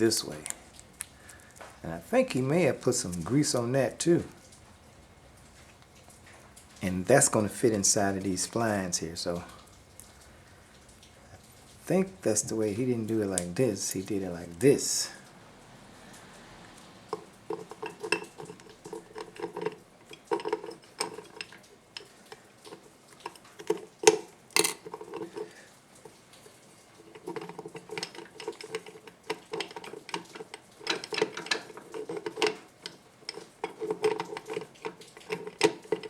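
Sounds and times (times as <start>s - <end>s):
metal parts clinking and rattling: 17.1s - 36.0s.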